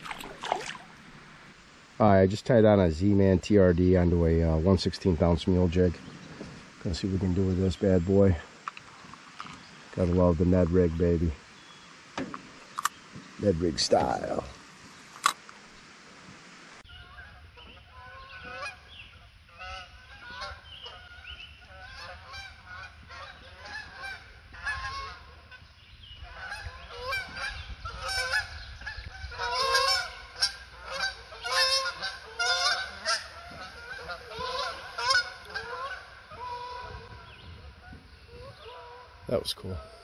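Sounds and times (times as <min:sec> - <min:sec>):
geese honking: 0:16.9 - 0:40.0.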